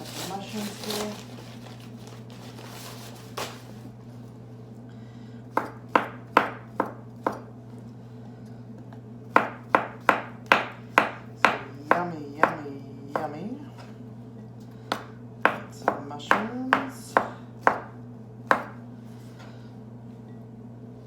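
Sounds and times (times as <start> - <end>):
knife chopping on cutting board: 5.5 - 7.5, 9.3 - 13.4, 14.9 - 18.8.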